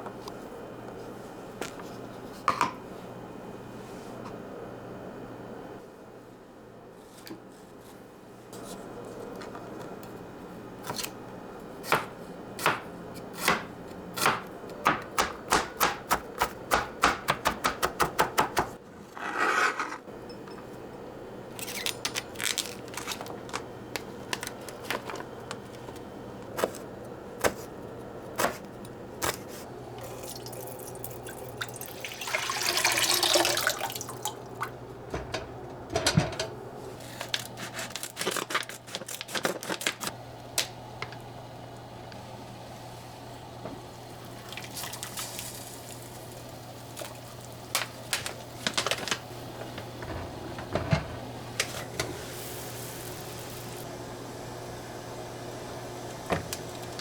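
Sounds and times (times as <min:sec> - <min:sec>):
knife chopping on cutting board: 0:11.8 - 0:18.8, 0:28.4 - 0:29.6
tap water rushing: 0:30.0 - 0:36.4, 0:56.1 - 0:57.0.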